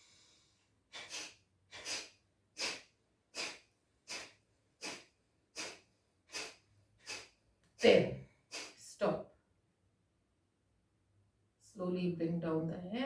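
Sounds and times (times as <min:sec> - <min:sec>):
sharp nasal exhalations: 0:00.0 - 0:08.8.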